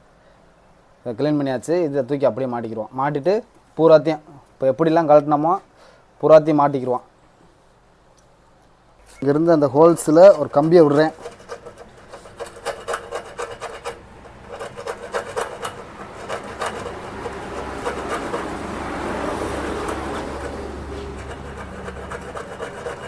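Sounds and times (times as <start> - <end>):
metal wire scraping in small holes: 9.0 - 23.0.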